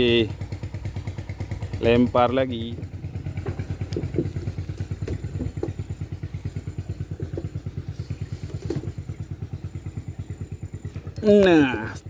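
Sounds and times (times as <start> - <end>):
boat engine idling: 0.0 - 12.0
light knocks: 3.4 - 5.8.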